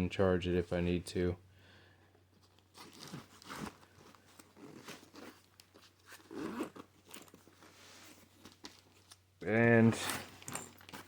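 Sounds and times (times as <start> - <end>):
fabric rustling: 2.3 - 11.0
zipper drawn: 4.4 - 7.4.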